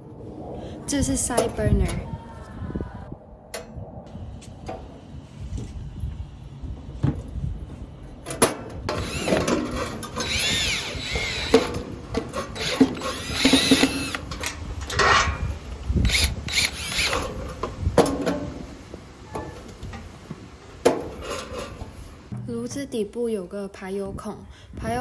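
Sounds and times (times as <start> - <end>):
cordless drill driving screws: 8.9 - 11.8, 12.4 - 14.4, 16.0 - 17.4.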